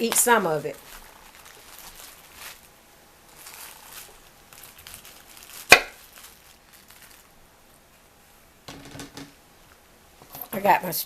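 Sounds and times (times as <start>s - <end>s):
handling and rustling: 0.0s - 8.1s.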